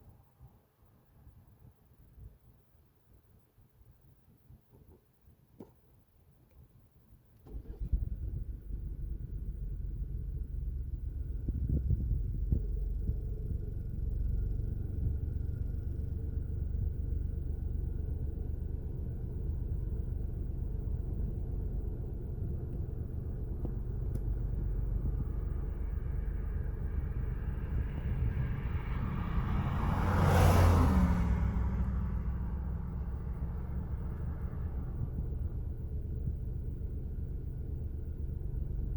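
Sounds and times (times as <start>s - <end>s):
low vehicle rumble: 7.5s - 38.9s
vehicle passing: 24.4s - 35.6s.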